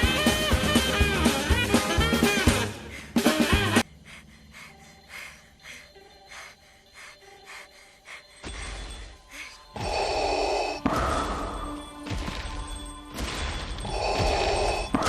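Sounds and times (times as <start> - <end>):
swing music with drums: 0.0 - 3.8
faint soft repeating sounds: 2.9 - 15.0.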